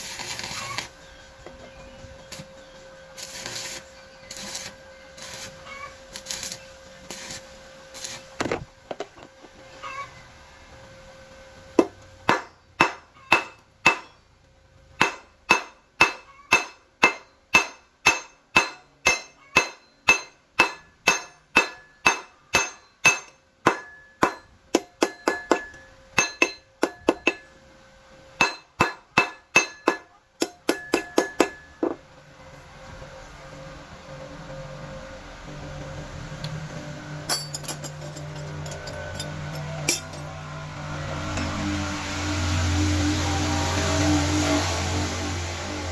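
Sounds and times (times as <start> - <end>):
hammer striking steel: 11.8 - 14.2, 15.0 - 27.6, 28.4 - 32.0, 37.3 - 40.4.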